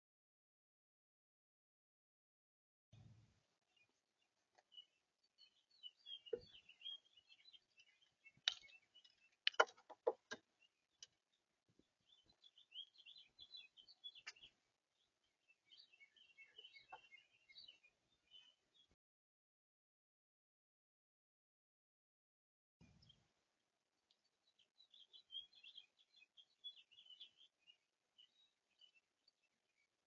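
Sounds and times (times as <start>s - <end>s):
songbirds chirping: 3.0s - 19.0s, 22.8s - 30.0s
sharp knocks and clicks: 8.4s - 11.1s.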